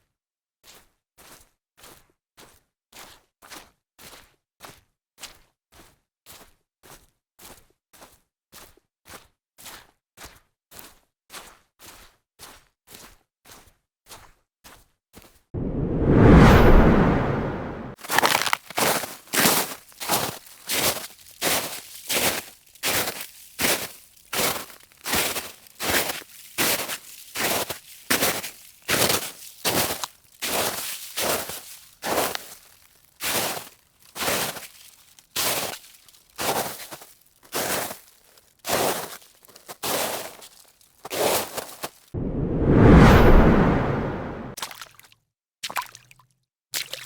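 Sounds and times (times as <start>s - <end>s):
footsteps crunching through snow: 18.0s - 42.1s.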